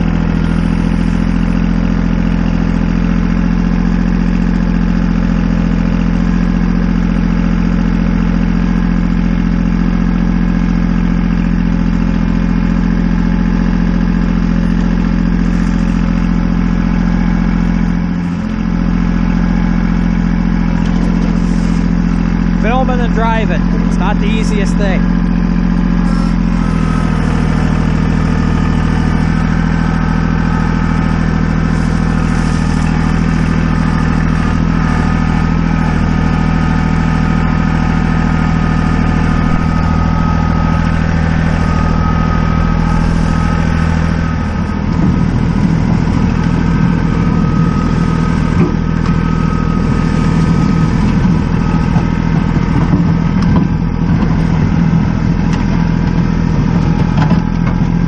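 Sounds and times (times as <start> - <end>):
tractor engine running: 0.0 - 58.0.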